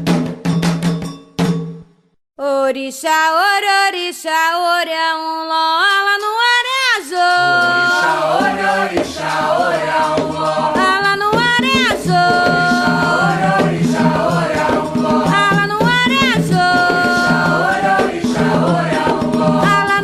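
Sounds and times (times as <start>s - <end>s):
drum percussion: 0.0s - 2.1s, 7.4s - 20.0s
person singing devotional song: 2.4s - 20.0s.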